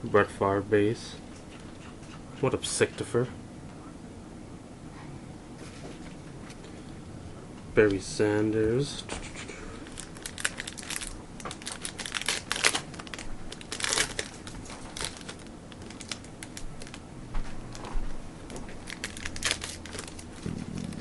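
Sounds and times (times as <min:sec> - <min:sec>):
card wrapper crinkling: 0:09.8 - 0:17.0, 0:18.5 - 0:21.0.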